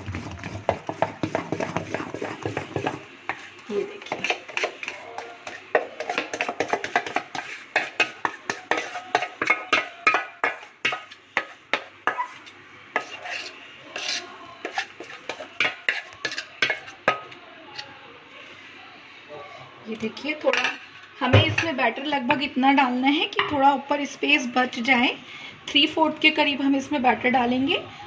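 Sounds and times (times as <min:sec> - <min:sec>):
whisk scraping a bowl: 0:00.0 - 0:17.2.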